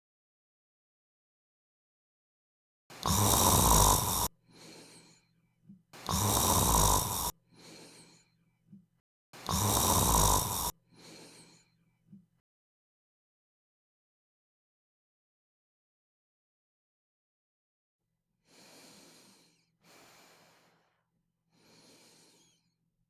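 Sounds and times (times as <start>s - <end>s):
person snoring: 2.9s - 5.1s, 6.0s - 8.2s, 9.4s - 11.6s
quiet breath: 2.9s - 8.8s, 9.4s - 12.2s, 18.4s - 22.8s.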